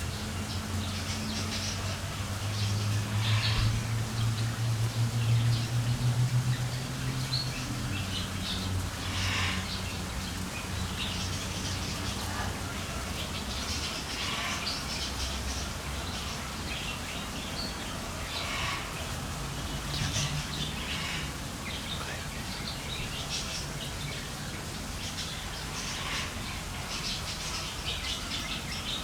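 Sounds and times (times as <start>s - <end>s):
small birds chirping: 0.0s - 29.0s
low background rumble: 3.0s - 8.2s.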